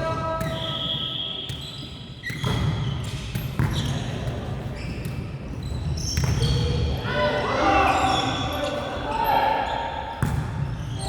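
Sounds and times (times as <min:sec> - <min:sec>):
basketballs bouncing on gym floor: 0:00.0 - 0:06.8, 0:10.2 - 0:11.0.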